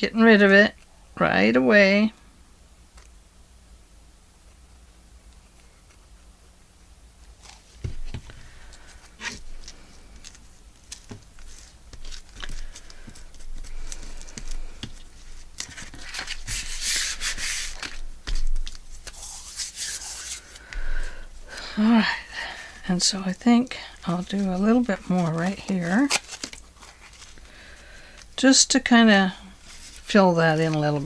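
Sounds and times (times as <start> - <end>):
paper rustling: 7.3 - 28.3, 29.6 - 31.0.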